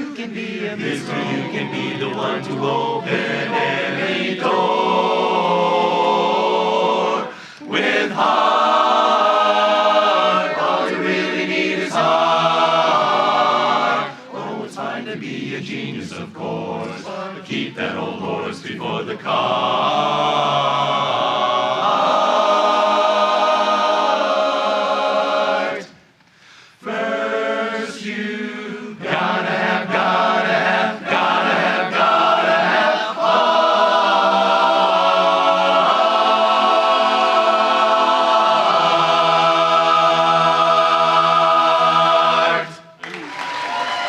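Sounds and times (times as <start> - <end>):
chorus singing a cappella: 0.0 - 26.1, 26.8 - 43.0.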